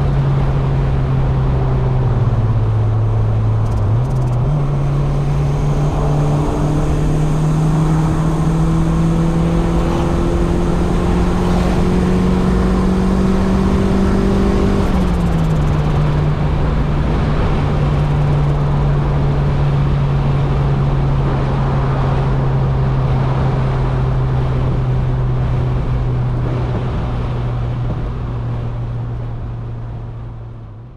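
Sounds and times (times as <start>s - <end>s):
road noise: 0.0s - 30.9s
car engine running: 0.8s - 21.5s.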